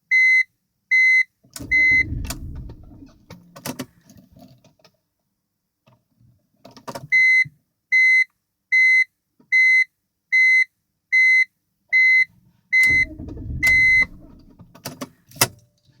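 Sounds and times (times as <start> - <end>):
low rumbling noise: 1.6 - 3.7, 12.8 - 14.9.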